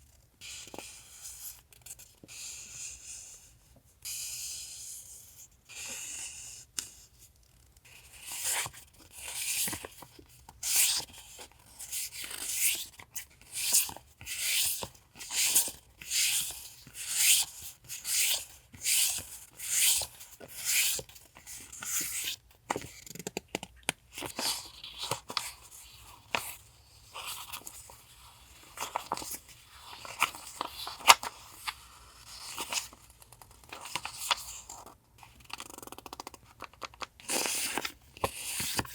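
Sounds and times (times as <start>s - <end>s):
paper rustling: 24.2s - 38.9s.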